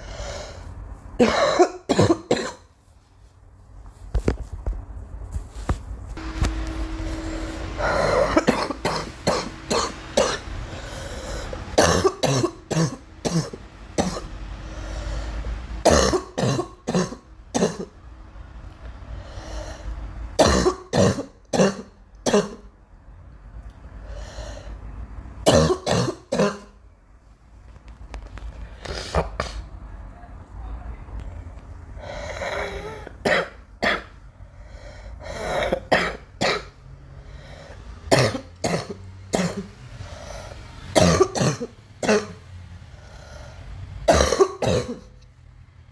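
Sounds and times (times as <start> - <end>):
girl coughing: 1.2 - 2.6, 7.8 - 10.5, 11.8 - 14.3, 15.8 - 17.9, 20.4 - 22.7, 25.5 - 26.8, 32.3 - 34.2, 35.3 - 36.7, 38.1 - 39.7, 41.0 - 42.4, 44.1 - 45.1.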